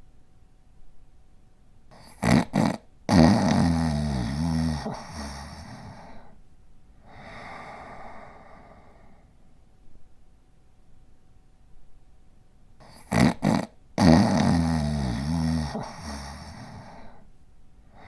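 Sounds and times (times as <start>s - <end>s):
dog snoring: 1.9s - 6.4s, 12.8s - 17.2s.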